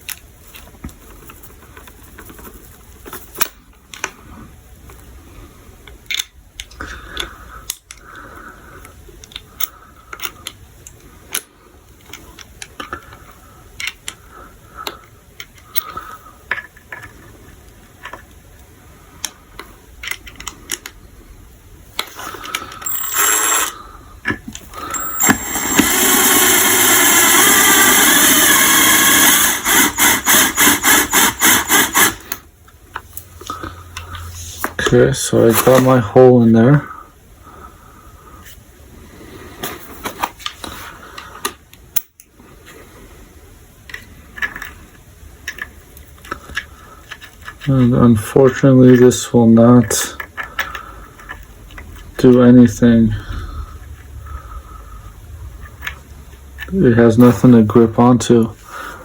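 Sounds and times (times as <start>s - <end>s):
power tool running: 22.8s - 23.8s, 24.8s - 32.4s.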